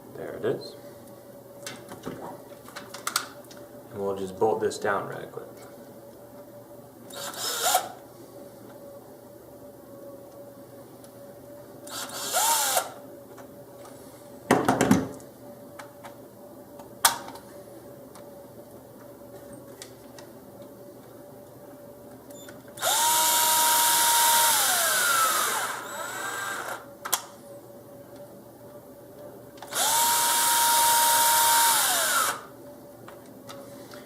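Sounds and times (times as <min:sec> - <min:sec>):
power screwdriver motor whining: 0:07.1 - 0:08.0, 0:11.9 - 0:13.0, 0:22.8 - 0:26.8, 0:29.7 - 0:32.5.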